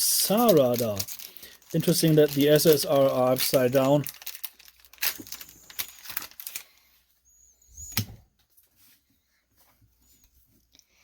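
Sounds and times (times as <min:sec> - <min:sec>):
cards and foil wrappers crinkling: 0:00.0 - 0:07.0.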